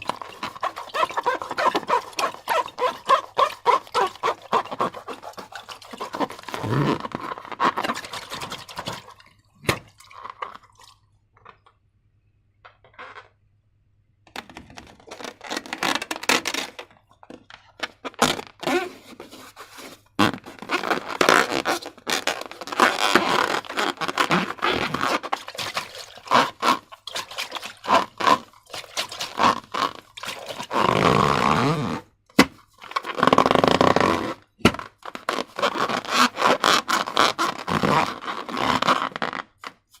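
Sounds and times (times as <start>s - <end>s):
slime squishing by hand: 0.0s - 10.7s.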